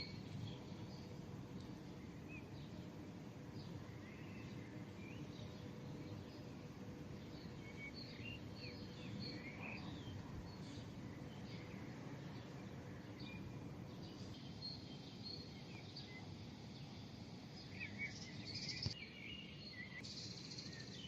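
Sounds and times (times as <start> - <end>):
distant city hum: 0.0 - 21.0.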